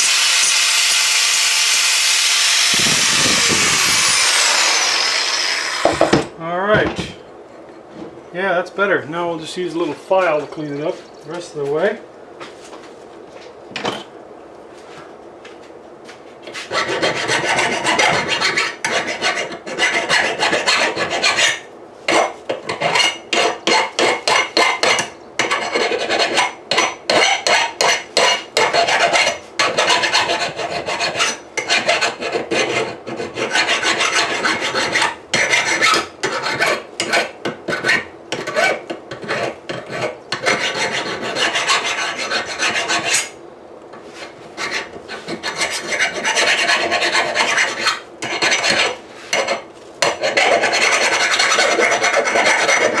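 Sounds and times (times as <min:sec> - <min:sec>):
file rasping on steel: 0:02.0 - 0:06.2, 0:16.5 - 0:43.4, 0:44.2 - 0:53.0.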